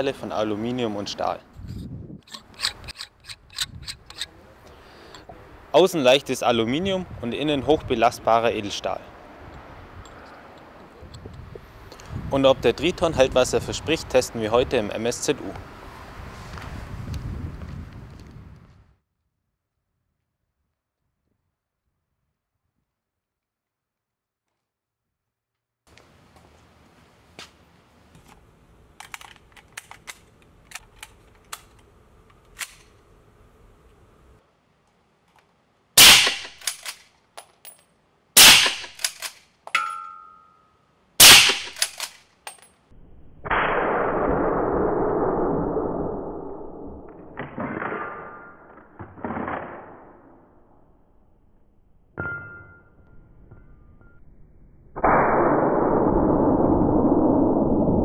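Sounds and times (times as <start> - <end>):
suppressed rifle shots: 36.0 - 36.8, 38.4 - 39.2, 41.2 - 42.1
short metallic ring: 39.8 - 40.8, 52.2 - 54.3.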